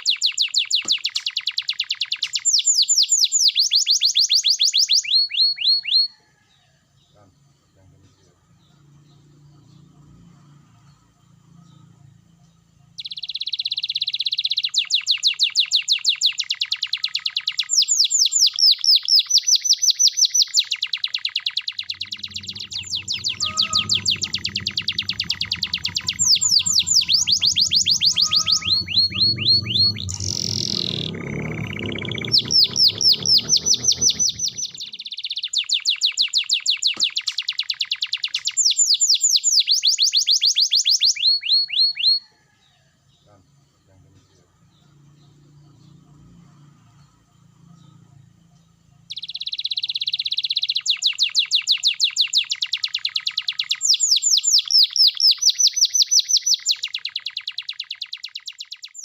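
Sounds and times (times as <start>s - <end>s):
canary singing trills: 0.0s - 6.4s, 7.0s - 42.4s, 43.1s - 59.0s
descending whistle: 21.8s - 34.8s
low rumble: 22.0s - 34.9s.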